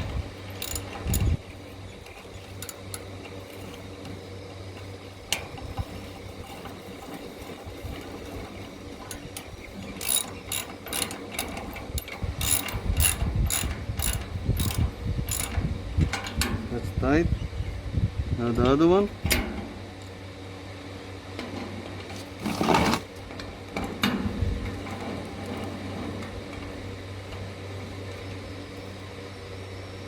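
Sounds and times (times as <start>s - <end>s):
ratchet wrench clicking: 0.6s - 1.3s, 10.0s - 15.6s.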